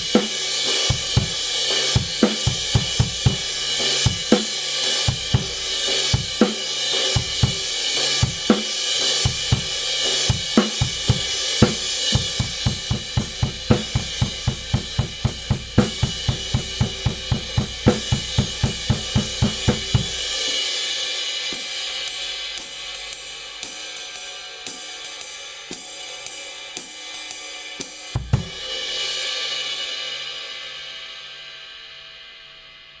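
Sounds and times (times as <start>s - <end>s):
ride cymbal strokes: 0.0s - 31.7s
deep drum hits: 10.9s - 20.3s.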